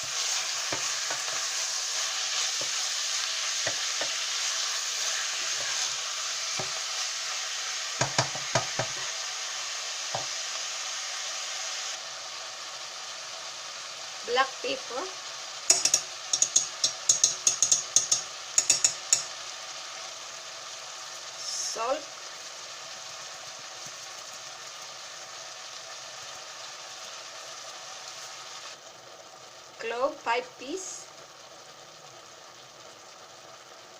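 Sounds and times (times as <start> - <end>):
meat sizzling in a pan: 0.0 - 33.9
utensil knocking against pan: 8.0 - 9.0, 15.7 - 19.3.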